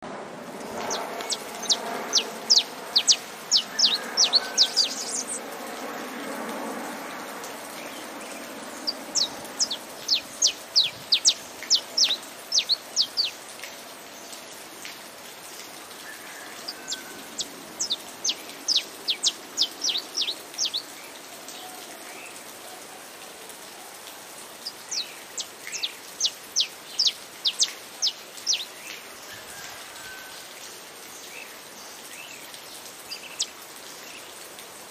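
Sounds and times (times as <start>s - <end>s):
steady rain-like hiss: 0.0s - 34.9s
finch singing: 0.8s - 5.4s, 8.3s - 13.4s, 16.9s - 20.9s, 24.6s - 29.0s.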